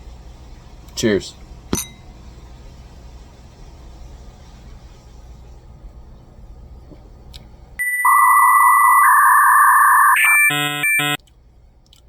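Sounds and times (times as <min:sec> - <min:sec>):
loud electronic beep: 0:07.8 - 0:11.2.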